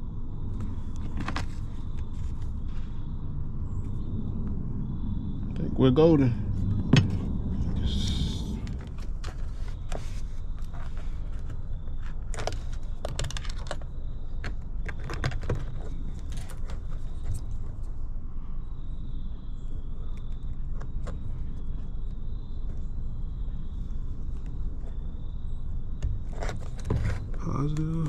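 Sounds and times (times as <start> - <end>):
low background rumble: 0.0 - 28.0.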